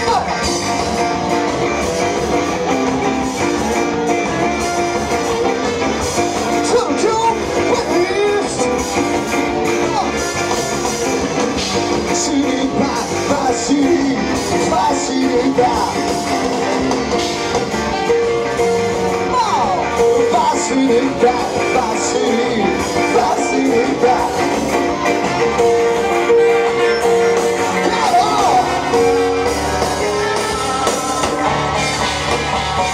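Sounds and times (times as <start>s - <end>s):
live rock band: 0.0s - 32.9s.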